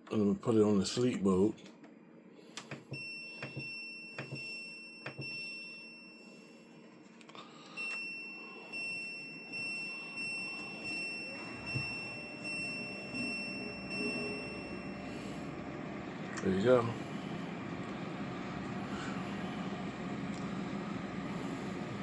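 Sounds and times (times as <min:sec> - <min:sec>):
air conditioner fan running: 0:06.8 - 0:22.0
pulsing high electronic tone: 0:08.4 - 0:15.5.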